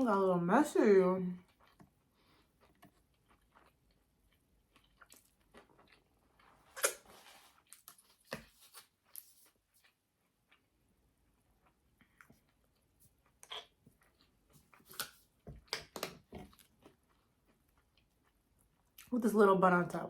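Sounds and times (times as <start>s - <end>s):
person chewing: 1.4s - 19.1s.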